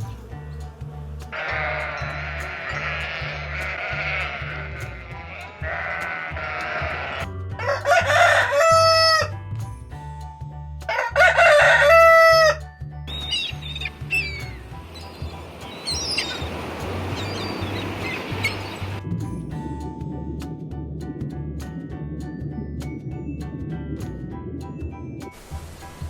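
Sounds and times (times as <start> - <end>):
background music with low beat: 0.0 - 26.0
wavering animal call: 1.4 - 7.2, 13.1 - 19.0
rooster crowing: 7.6 - 9.3, 10.9 - 12.6
short bird chirps: 13.1 - 15.2.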